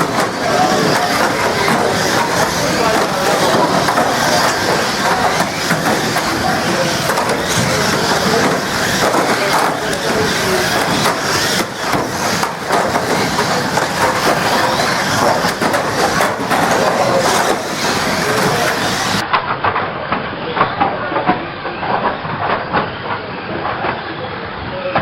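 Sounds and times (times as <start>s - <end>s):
racing car engines: 0.0s - 19.3s.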